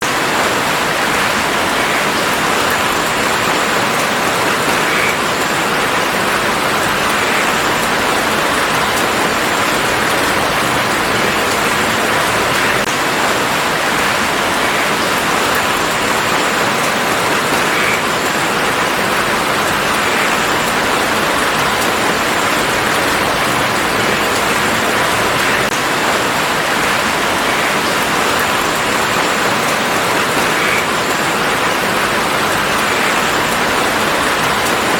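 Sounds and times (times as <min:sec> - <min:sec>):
steady rain patter: 0:00.0 - 0:34.9.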